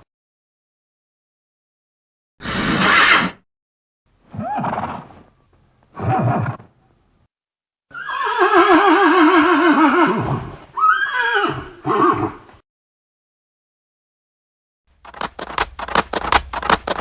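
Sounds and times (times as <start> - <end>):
horse whinnying: 2.4 - 3.4, 4.3 - 5.2, 6.0 - 6.7, 7.9 - 12.4.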